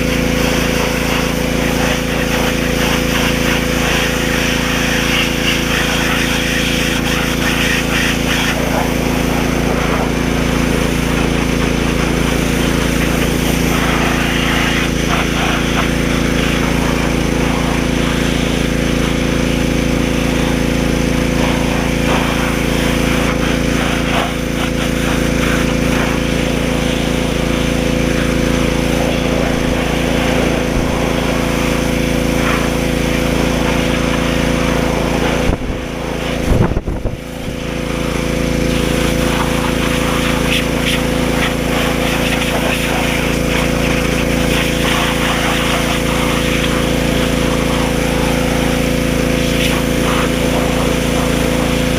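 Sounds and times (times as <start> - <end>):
pressure washer running: 0.0 - 51.9.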